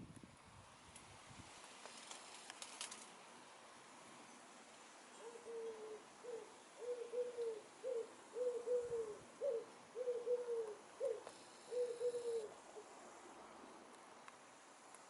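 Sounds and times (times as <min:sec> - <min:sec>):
wood pigeon cooing: 0:05.2 - 0:13.0.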